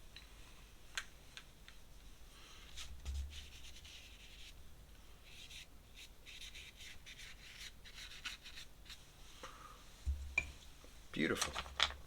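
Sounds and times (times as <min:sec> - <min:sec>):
soft low bump: 0:10.1 - 0:10.6.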